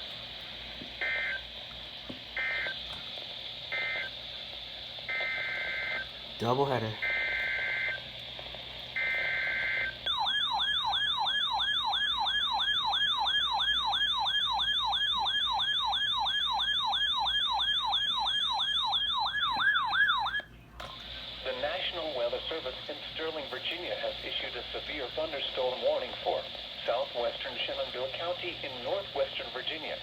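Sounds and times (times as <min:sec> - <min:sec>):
siren yelp alert tone: 0:09.0 - 0:20.5.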